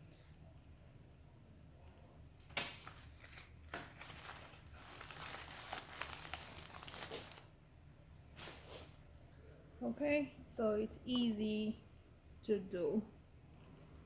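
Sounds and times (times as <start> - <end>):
crinkling and rustling handling noise: 2.4 - 7.5, 8.3 - 9.0.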